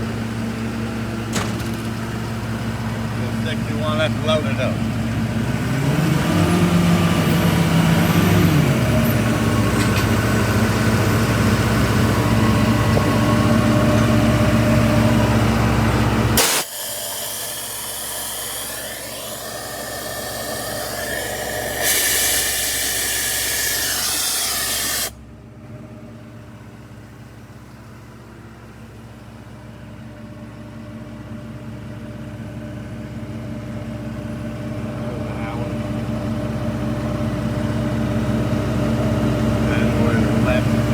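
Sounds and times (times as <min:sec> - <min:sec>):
diesel engine running: 0:00.0 - 0:40.9
compressed air hissing: 0:16.4 - 0:25.2.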